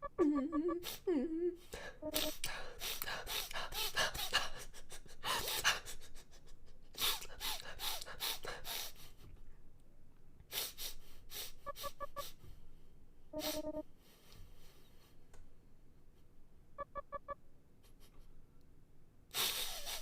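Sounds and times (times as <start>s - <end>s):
short pitched tones: 0.0s - 0.8s, 2.0s - 2.4s, 11.7s - 12.3s, 13.4s - 13.8s, 16.8s - 17.4s
person gasping and breathing hard: 0.8s - 9.2s.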